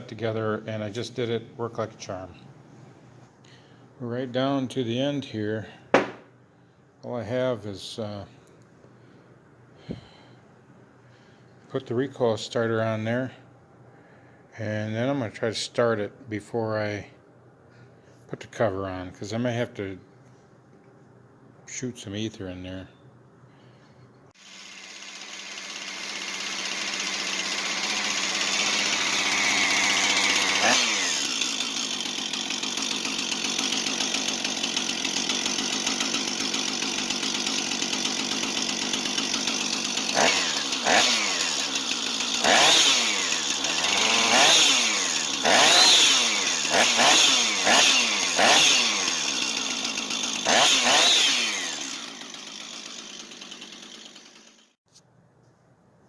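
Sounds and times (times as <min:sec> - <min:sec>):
chainsaw engine revving and idling: 0:24.4 - 0:54.8.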